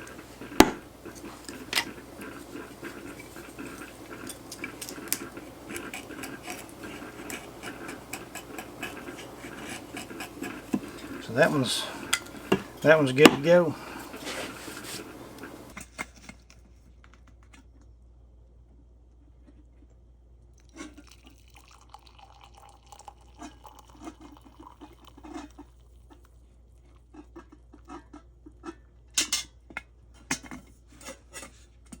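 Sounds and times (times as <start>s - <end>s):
coffee percolator gurgling: 0.0s - 15.8s, 20.6s - 26.2s.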